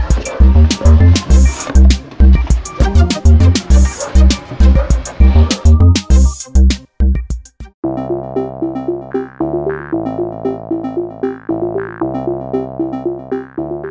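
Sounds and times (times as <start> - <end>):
synthesizer keyboard riff: 0.0 - 6.9, 7.8 - 13.9
electronic drum beat: 0.0 - 7.8.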